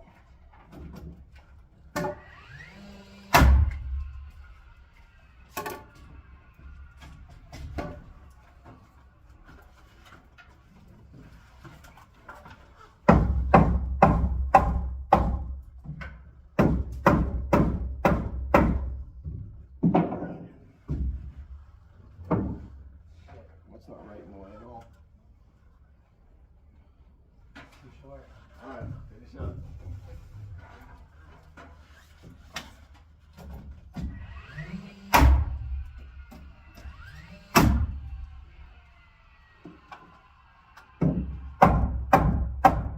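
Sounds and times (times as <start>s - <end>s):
hammer striking nails into wood: 13.1s - 15.6s, 16.6s - 19.0s, 41.0s - 42.9s.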